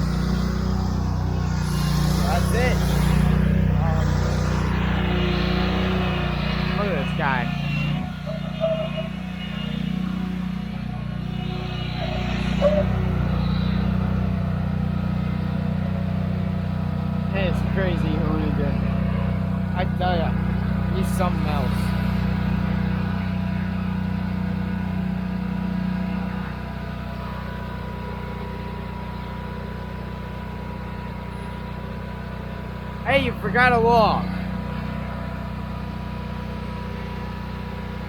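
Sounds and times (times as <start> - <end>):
small engine running: 0.0 - 38.0
short tone: 3.8 - 14.4.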